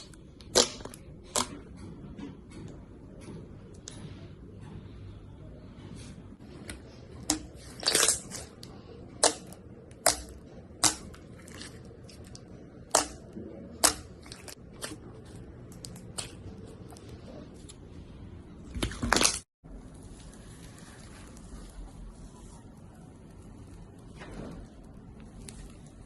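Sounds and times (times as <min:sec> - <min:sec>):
slime popping and crackling: 0:00.0 - 0:01.6, 0:07.2 - 0:13.2, 0:18.8 - 0:19.4.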